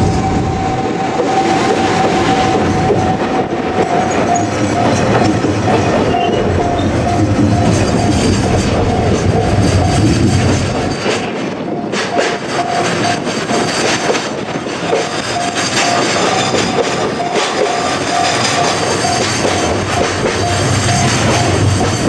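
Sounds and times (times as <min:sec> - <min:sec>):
train wheels clacking over rails: 0:00.0 - 0:22.0
level crossing bell dinging: 0:03.8 - 0:10.9, 0:11.8 - 0:14.1, 0:14.9 - 0:22.0.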